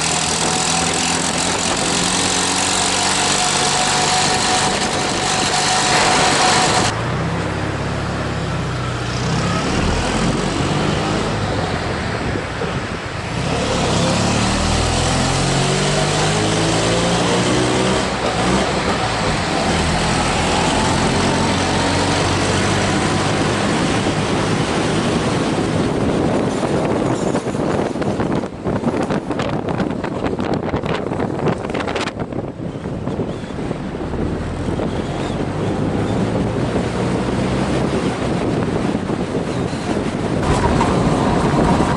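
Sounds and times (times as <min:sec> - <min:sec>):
car engine revving: 0:00.0 - 0:08.4, 0:09.0 - 0:11.8, 0:13.2 - 0:26.4, 0:40.0 - 0:41.9.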